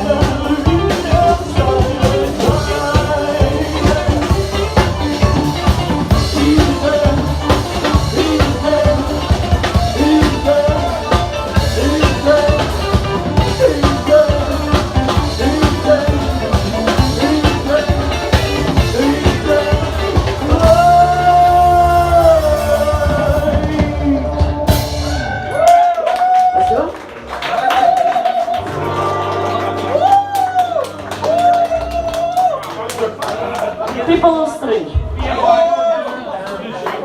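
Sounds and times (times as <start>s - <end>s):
melodic lead line: 0.0s - 25.4s
drum kit: 0.0s - 26.8s, 27.7s - 32.7s
live rock band playing: 0.0s - 35.5s.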